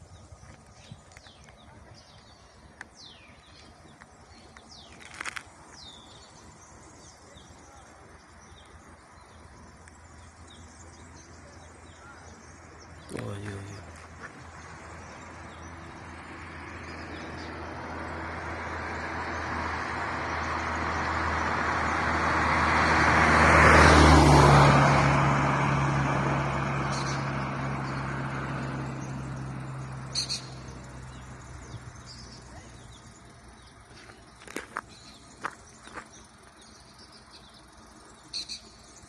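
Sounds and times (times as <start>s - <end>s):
bird chirps: 0.0s - 19.6s, 26.9s - 28.1s, 28.9s - 39.0s
vehicle driving past: 2.0s - 39.0s.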